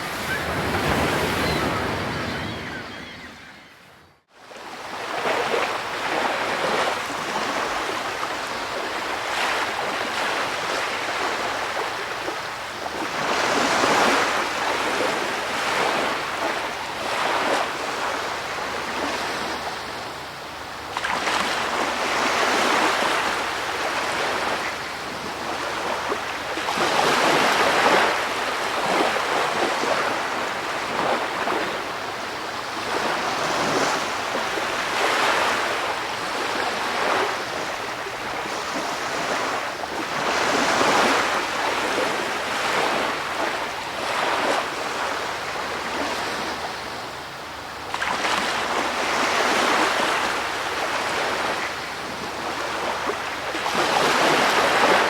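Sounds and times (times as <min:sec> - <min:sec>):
ocean waves washing in: 0:00.0 - 0:03.7.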